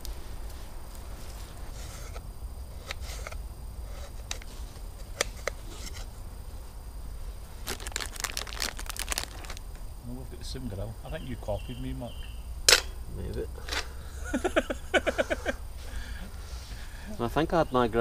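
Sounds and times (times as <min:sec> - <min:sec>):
campfire crackling: 0:00.0 - 0:18.0.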